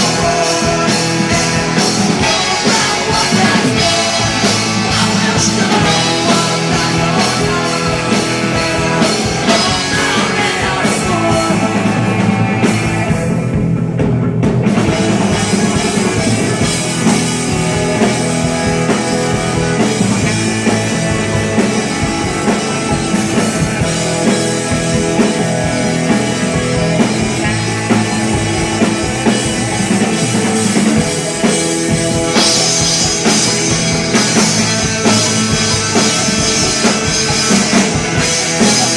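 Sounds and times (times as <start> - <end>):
person singing: 0.0 - 12.4, 32.3 - 38.9
rock band playing: 0.0 - 38.9.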